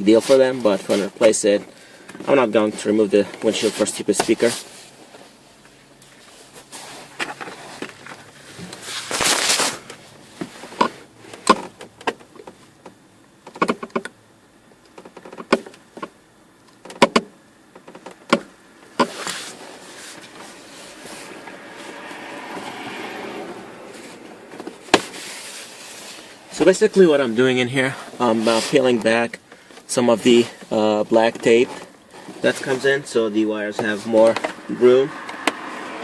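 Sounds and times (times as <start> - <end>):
clicks and knocks of handling wires: 7.2 - 14.2, 14.8 - 19.4
brief scraping noises: 8.7 - 9.9.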